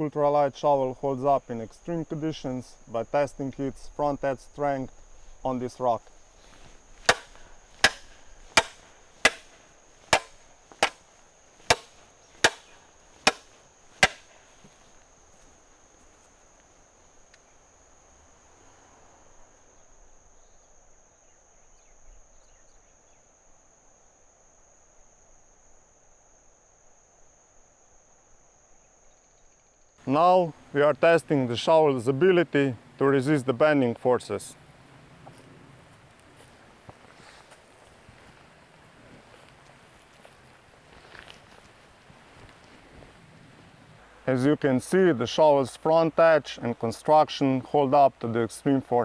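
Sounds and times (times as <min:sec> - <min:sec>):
shovel blade striking rock: 0:07.0 - 0:11.0, 0:11.7 - 0:14.4.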